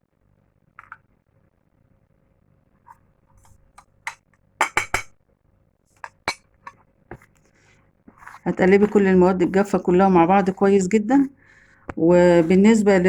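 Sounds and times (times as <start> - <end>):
utensils clinking against bowl: 6.0 - 6.4.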